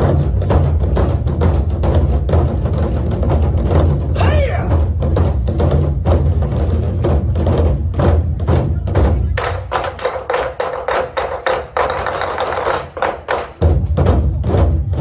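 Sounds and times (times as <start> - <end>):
deep drum booms: 0.0 - 9.4.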